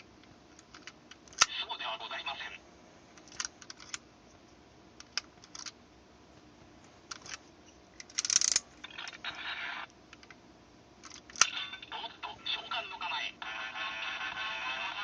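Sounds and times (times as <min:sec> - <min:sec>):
toy clicking: 0:08.0 - 0:08.6.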